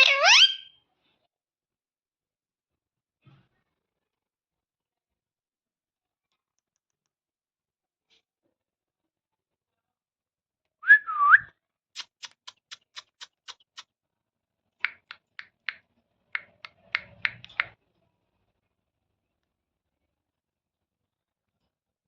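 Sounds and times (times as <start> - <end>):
parrot whistling: 0.0 - 0.7, 10.8 - 11.5
parrot clicking chirps: 12.0 - 13.8, 14.8 - 15.8, 16.4 - 17.8.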